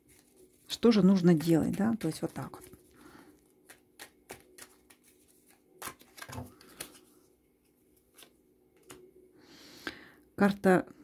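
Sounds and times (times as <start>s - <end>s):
cards flicked and tapped: 3.4s - 7.0s.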